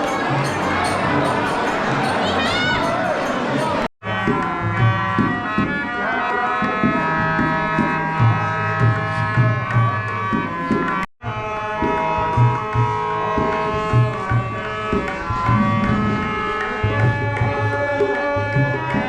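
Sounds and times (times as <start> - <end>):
sustained melodic notes: 0.0 - 3.9, 13.9 - 17.7
tabla rhythm: 0.0 - 19.0.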